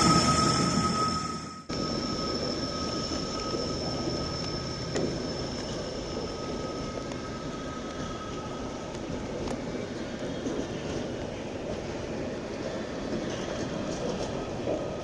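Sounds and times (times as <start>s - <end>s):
high-pitched whines: 0.0s - 8.8s
freight train rumbling past: 0.0s - 15.0s.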